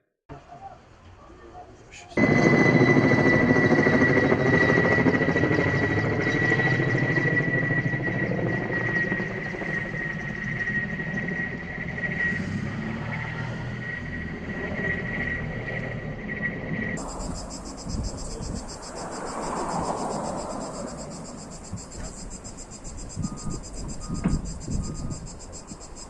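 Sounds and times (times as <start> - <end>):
steady high whine: 2.1 - 26.0
cicadas buzzing: 17.0 - 26.0.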